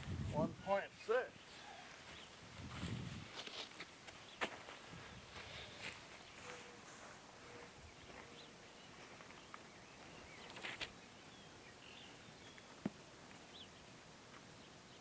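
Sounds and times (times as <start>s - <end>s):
soft rustle: 1.4s - 11.0s
faint bird chirps: 6.2s - 12.7s.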